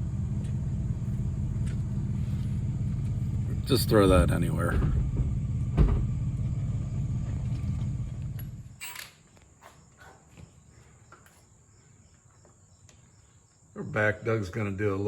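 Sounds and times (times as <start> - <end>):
vehicle engine rumble from inside: 0.0 - 8.8
crickets chirping faintly: 0.0 - 15.0
thump: 4.6 - 6.2.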